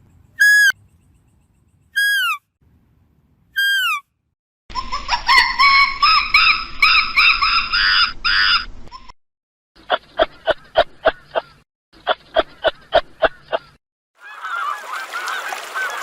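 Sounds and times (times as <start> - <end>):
falling whistle-like animal calls: 0.4 - 0.8, 2.0 - 2.4, 3.6 - 4.0.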